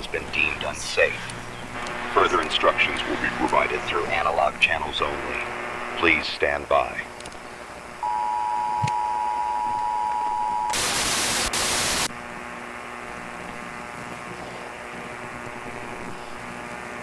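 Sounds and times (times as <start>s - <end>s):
static hiss with low hum: 0.0s - 17.0s
loud blast of tv static: 1.8s - 6.6s, 10.7s - 12.3s.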